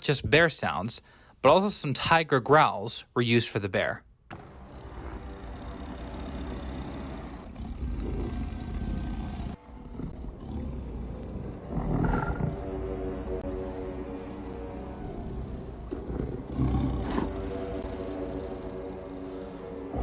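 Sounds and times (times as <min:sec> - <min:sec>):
bear growling and roaring: 0:04.3 - 0:20.0.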